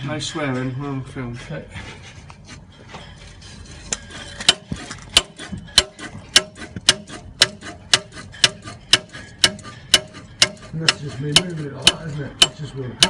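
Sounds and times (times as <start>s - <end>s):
sharp metallic knocks: 3.9s - 13.0s.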